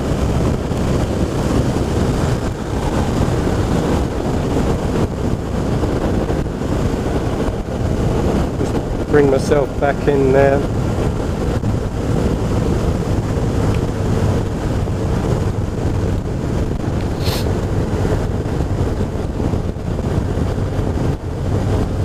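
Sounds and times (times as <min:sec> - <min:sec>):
motorcycle engine cruising: 0:00.0 - 0:22.0
wind noise on microphone: 0:00.0 - 0:22.0
brief hiss: 0:17.1 - 0:17.5
tyre hiss on wet road: 0:17.1 - 0:17.5.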